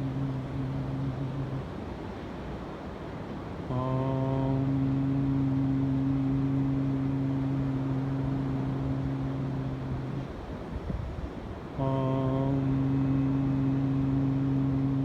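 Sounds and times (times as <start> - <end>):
low voice chanting: 0.0 - 2.3, 3.6 - 15.0
wind: 0.0 - 15.0.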